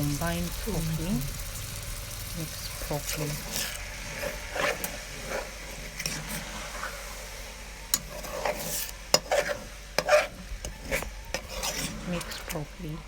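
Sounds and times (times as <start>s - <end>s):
utensil scraping a pot: 2.4s - 7.2s, 7.9s - 13.0s.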